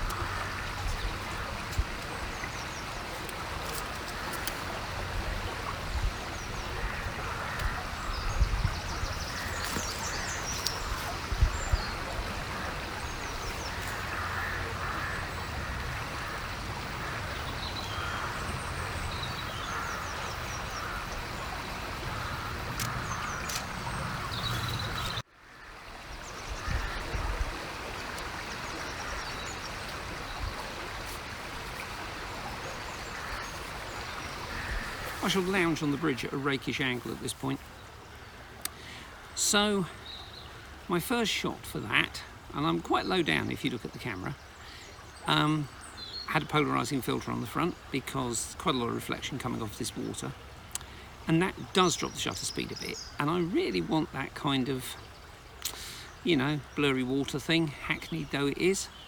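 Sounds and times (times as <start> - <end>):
small birds chirping: 0.0 - 25.3, 28.0 - 59.0
river water running: 0.0 - 59.0.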